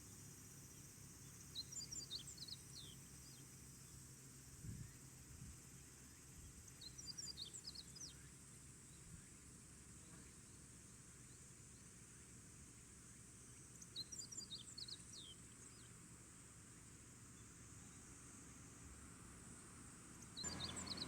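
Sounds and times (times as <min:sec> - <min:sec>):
small bird chirping: 0:20.3 - 0:21.0.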